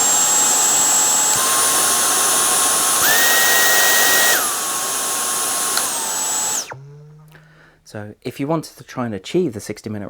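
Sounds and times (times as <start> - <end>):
vacuum cleaner motor whining: 0.0 - 6.8.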